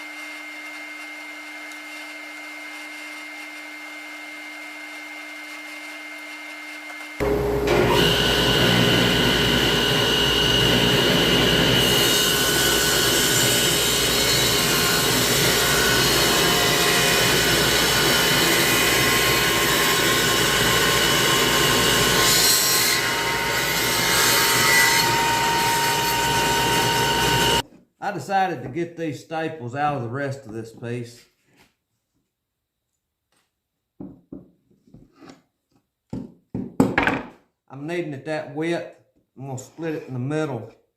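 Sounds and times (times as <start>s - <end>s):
table saw ripping a board: 0.5s - 27.6s
dust vacuum humming: 7.2s - 27.6s.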